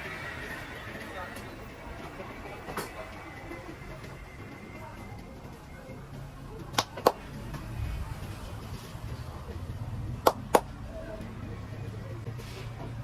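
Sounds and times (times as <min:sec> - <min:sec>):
sharp hand slaps: 0:06.8 - 0:07.2, 0:10.2 - 0:10.7.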